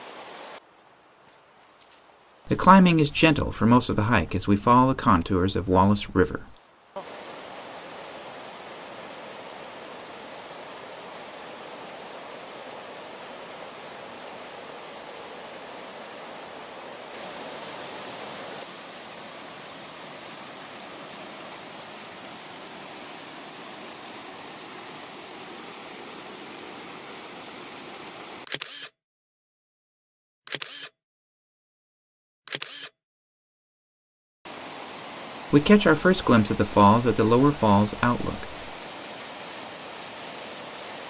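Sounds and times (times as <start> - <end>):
river rushing: 6.8 - 28.4, 34.5 - 41.0
camera shutter clicks: 28.4 - 28.9, 30.5 - 30.9, 32.5 - 32.9.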